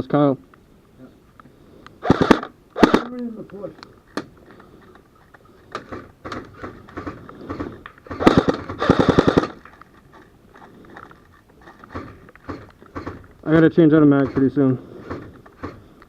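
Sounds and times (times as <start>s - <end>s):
airsoft gun bursts: 2.0s - 3.2s, 5.8s - 9.6s, 14.0s - 15.9s.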